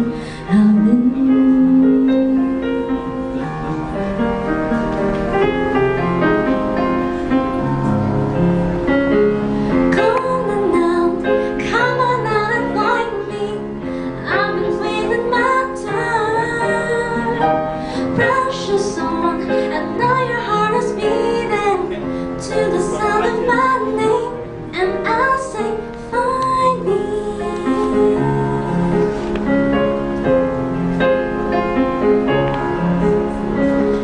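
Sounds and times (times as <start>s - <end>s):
woman singing: 0.0s - 3.0s, 9.9s - 29.0s
piano chords: 0.0s - 34.0s.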